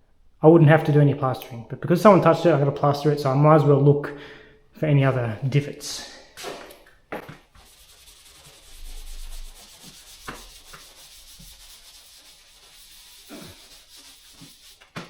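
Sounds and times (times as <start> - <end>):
rag rubbing on plaster: 7.2 - 15.0.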